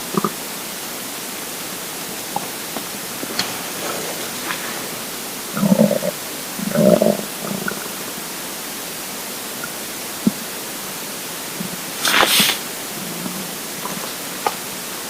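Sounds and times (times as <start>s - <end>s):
steady hiss: 0.0s - 15.0s
stomach gurgling: 0.1s - 0.4s, 2.2s - 8.0s
brief hissing burst: 12.0s - 12.7s.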